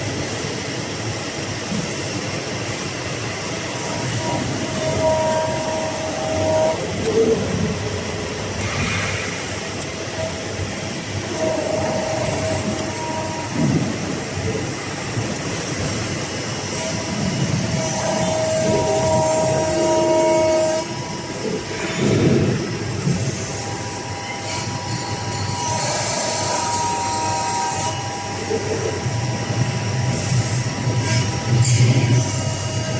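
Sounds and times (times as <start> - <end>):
machine noise: 0.0 - 32.9
hydraulic whine: 1.6 - 32.9.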